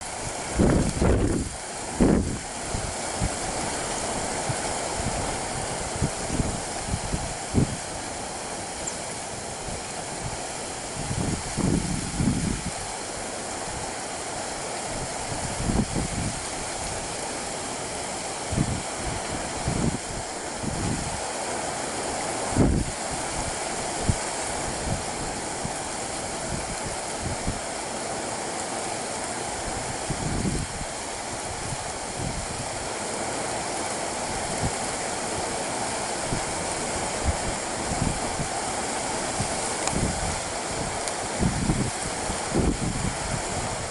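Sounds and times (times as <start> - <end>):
wind buffeting microphone: 0.0 - 14.1, 14.8 - 21.4, 22.2 - 27.7, 29.6 - 32.9, 36.0 - 43.9.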